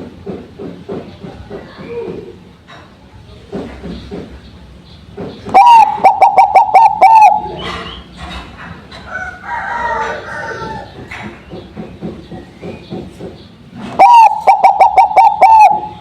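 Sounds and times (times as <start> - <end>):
dove cooing: 5.5 - 8.1, 13.9 - 16.0.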